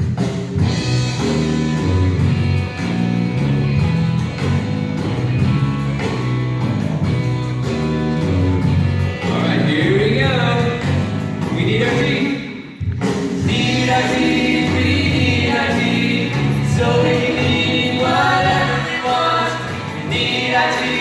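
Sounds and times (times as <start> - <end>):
upbeat guitar-backed song: 0.0 - 21.0
person singing: 13.5 - 21.0.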